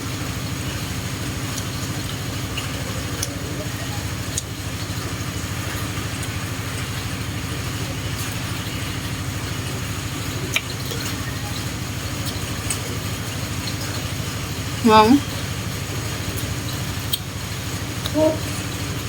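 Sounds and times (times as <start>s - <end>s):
low motor drone: 0.0s - 19.0s.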